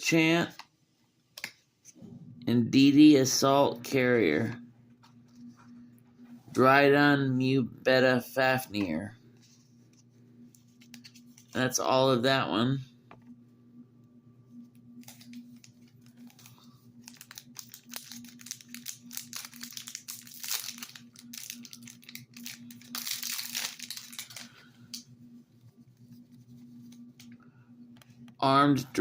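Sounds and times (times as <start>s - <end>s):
faint steady hum: 0.0s - 29.0s
foil wrapper crinkling: 15.0s - 25.0s.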